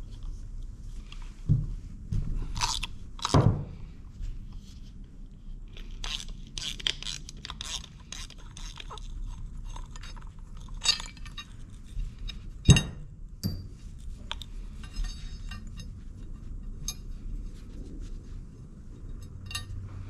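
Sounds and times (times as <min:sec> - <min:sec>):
tools clinking and clattering: 0:09.7 - 0:11.5, 0:12.2 - 0:16.0, 0:19.2 - 0:19.8
ringing metal clank: 0:12.7 - 0:13.8.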